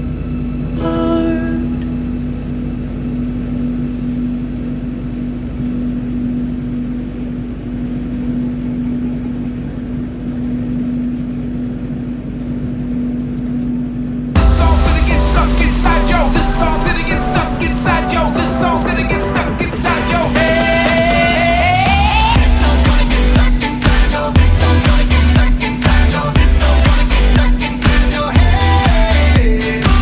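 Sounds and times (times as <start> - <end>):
train carriage rumble and hum: 0.0 - 30.0
music: 14.4 - 30.0.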